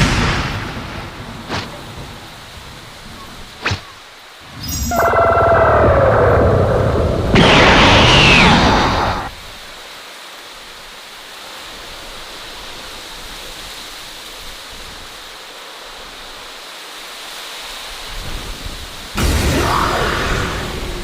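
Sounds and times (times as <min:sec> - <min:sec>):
steady rushing noise: 0:03.6 - 0:09.7, 0:19.1 - 0:21.0.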